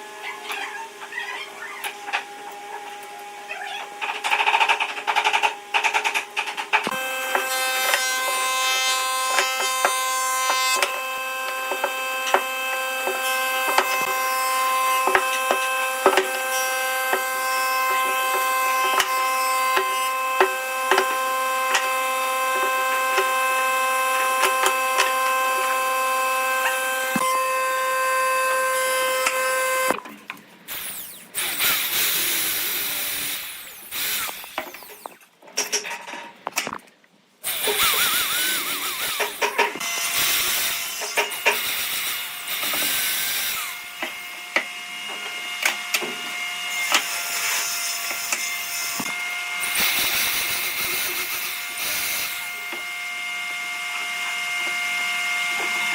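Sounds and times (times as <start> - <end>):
power tool motor whine: 6.8 - 30.0, 30.7 - 35.3, 37.4 - 44.1, 48.2 - 55.9
sharp clicks: 30.7 - 35.3.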